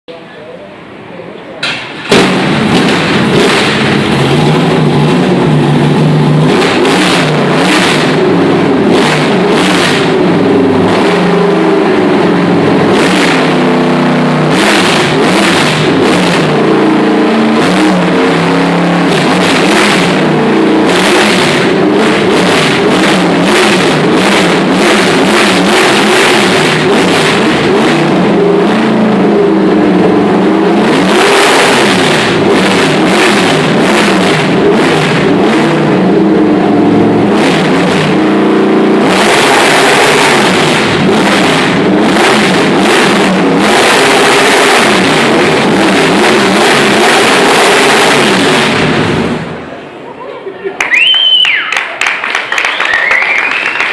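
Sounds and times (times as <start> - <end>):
racing car engine revving: 0.8 - 50.0, 52.0 - 53.9.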